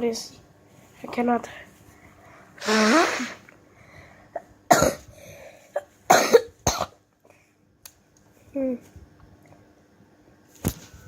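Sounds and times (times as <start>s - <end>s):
child coughing: 4.4s - 5.1s, 5.7s - 7.0s.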